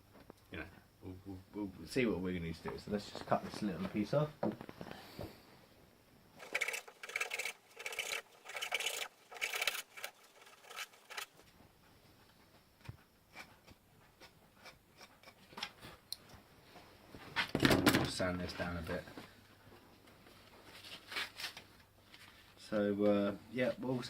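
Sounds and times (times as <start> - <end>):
hand saw cutting wood: 6.4 - 11.3.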